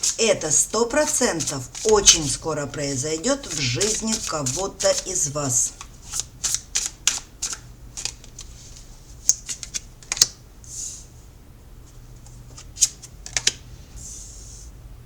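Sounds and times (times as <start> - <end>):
cards clicking on a table: 3.4 - 8.3, 9.3 - 10.4, 12.8 - 13.6.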